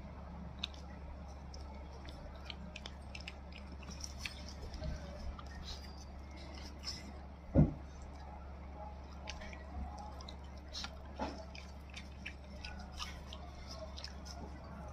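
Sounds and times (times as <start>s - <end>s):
dog chewing and licking: 0.4s - 14.9s.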